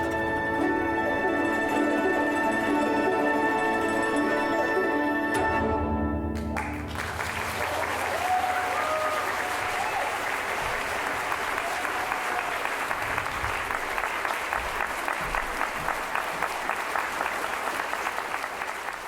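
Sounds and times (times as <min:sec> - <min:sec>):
audience applauding: 0:06.4 - 0:19.0.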